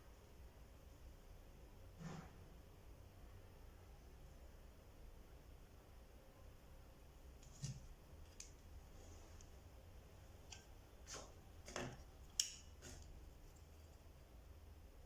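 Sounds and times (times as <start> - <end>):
objects clicking on work surface: 10.5 - 13.8.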